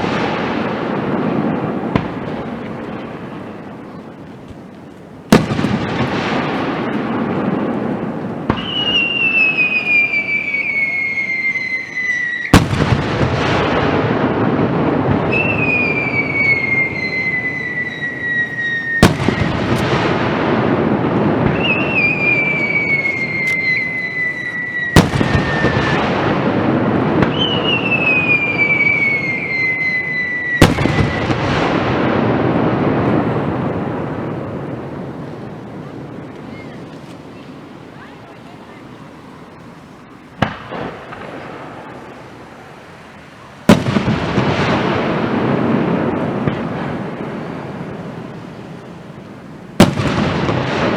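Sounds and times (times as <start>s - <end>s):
firework bangs with crackle: 0.0s - 38.3s, 39.4s - 50.9s
whistling firework shell: 8.5s - 13.1s, 15.1s - 20.2s, 21.4s - 26.4s, 27.1s - 31.8s.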